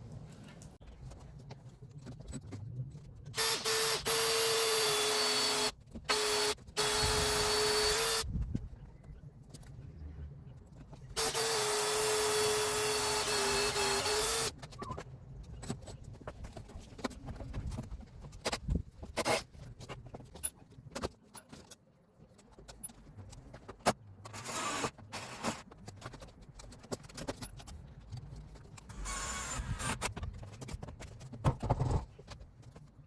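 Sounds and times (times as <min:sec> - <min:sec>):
electric power tool whining: 0:03.4 - 0:08.2, 0:11.2 - 0:14.5
quiet knocks and clatter: 0:30.1 - 0:33.0.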